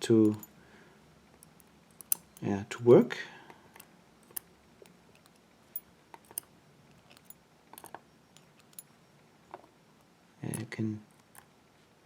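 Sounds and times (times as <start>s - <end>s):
metallic lock pin clicks: 0.0s - 0.6s, 1.4s - 2.5s, 3.5s - 9.7s, 10.5s - 11.5s.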